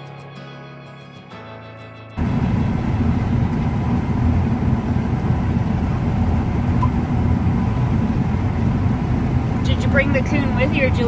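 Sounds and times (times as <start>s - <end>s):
background music: 0.0s - 2.9s
harvester engine and machinery droning: 2.2s - 11.0s.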